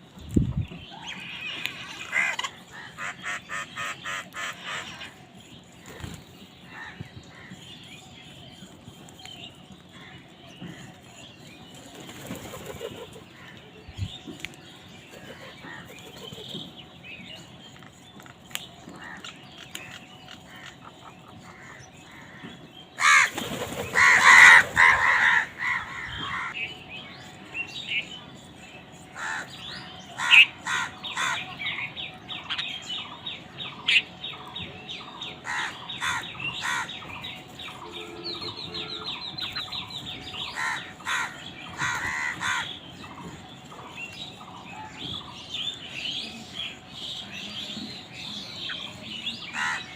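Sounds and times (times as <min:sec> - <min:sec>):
crows cawing: 0:01.5 - 0:05.2, 0:20.4 - 0:23.4, 0:24.0 - 0:26.6, 0:29.2 - 0:31.6, 0:35.4 - 0:37.1, 0:40.4 - 0:43.4, 0:49.5 - 0:49.9.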